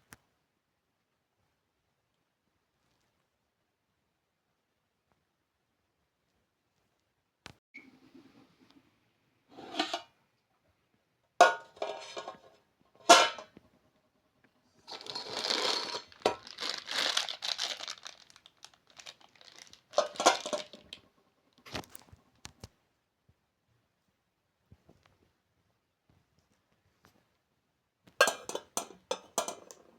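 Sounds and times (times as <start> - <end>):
crinkling and rustling handling: 14.8 - 22.8.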